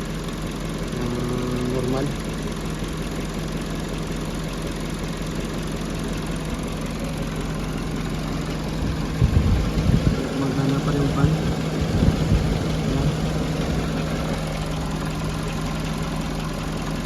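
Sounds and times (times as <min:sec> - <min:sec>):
car engine idling: 0:00.0 - 0:17.0
low thumps: 0:08.8 - 0:14.9.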